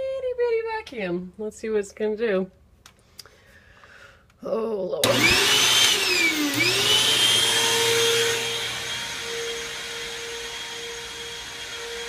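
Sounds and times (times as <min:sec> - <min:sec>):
vacuum cleaner motor whine: 0:05.0 - 0:12.0.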